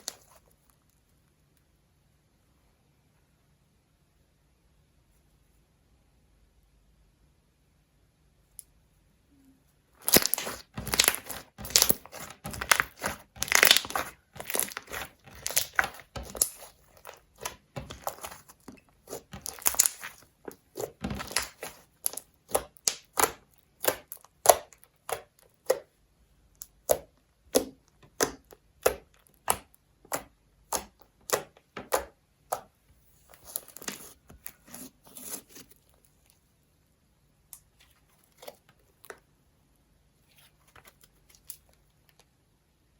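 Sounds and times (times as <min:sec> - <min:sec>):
slime crackling and popping: 0:10.0 - 0:25.9.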